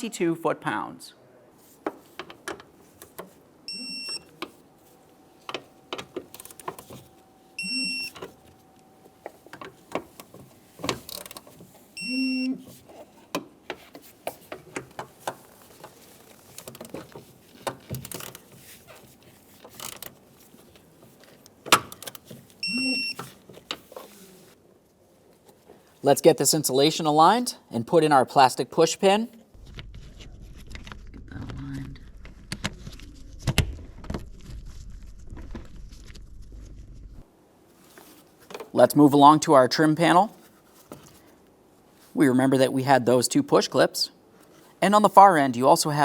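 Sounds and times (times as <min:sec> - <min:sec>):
short electronic beeps: 0:03.7 - 0:04.3, 0:07.6 - 0:08.2, 0:12.0 - 0:12.6, 0:22.6 - 0:23.2.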